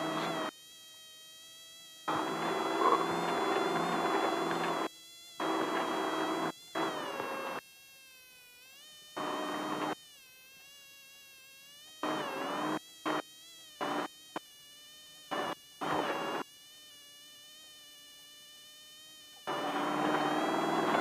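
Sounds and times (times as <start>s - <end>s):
race car engine whining: 2.1s - 4.9s, 19.5s - 21.0s.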